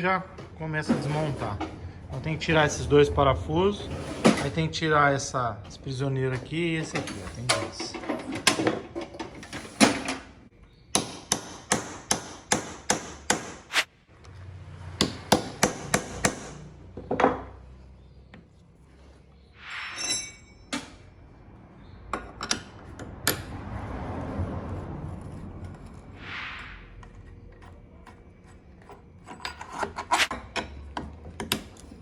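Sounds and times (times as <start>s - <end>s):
hammer striking metal: 10.9s - 13.9s, 19.6s - 20.9s
brief rushing noise: 26.2s - 26.8s.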